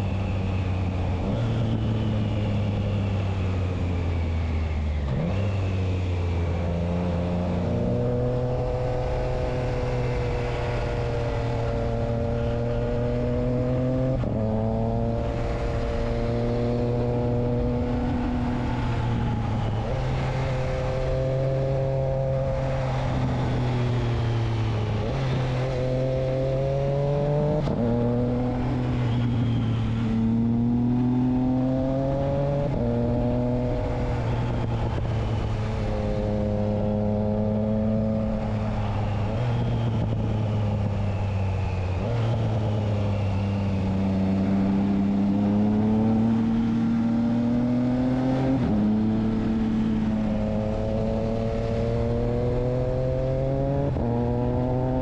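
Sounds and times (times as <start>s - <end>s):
motorcycle engine revving through gears: 0.0s - 55.0s.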